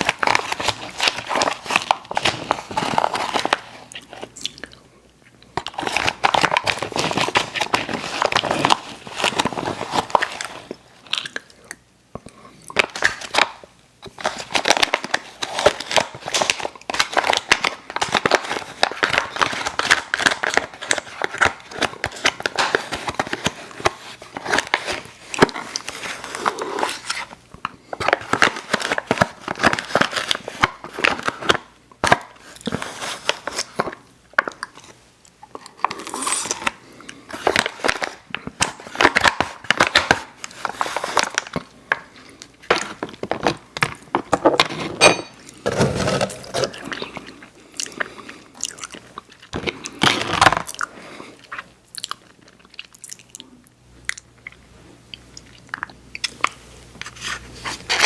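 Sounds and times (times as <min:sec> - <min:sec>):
candy wrapper crinkling and tearing: 0:00.0 - 0:04.8, 0:05.6 - 0:11.8, 0:12.7 - 0:53.4.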